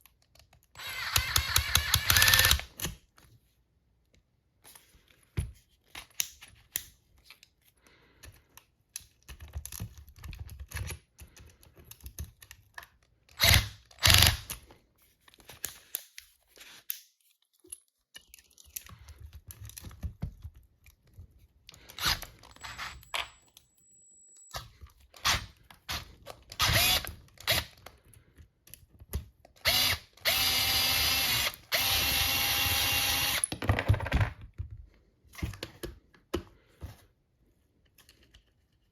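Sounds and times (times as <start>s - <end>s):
power drill running: 0.8s - 2.6s, 22.0s - 23.3s, 26.6s - 27.6s, 29.6s - 33.5s.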